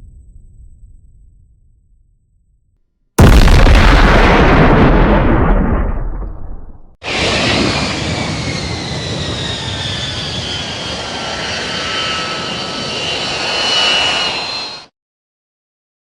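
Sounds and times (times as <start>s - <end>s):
jet aircraft flying past: 7.0s - 14.9s.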